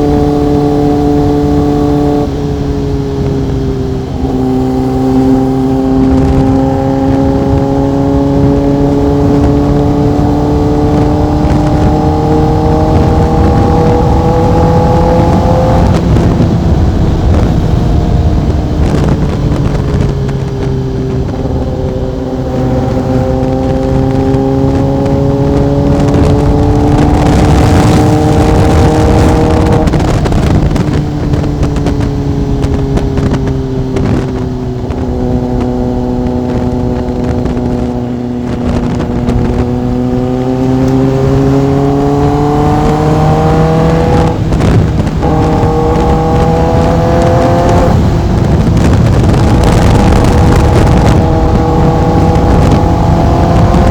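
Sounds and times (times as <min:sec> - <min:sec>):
motorcycle engine and exhaust: 0:00.0 - 0:53.9
wind and road rush: 0:00.0 - 0:53.9.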